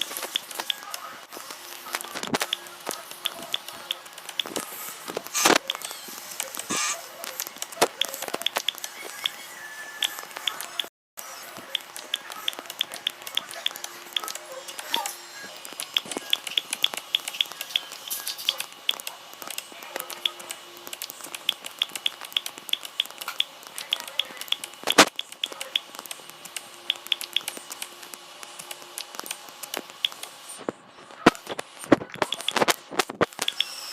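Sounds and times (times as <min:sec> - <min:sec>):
small sharp clicks: 0:15.7 - 0:30.3.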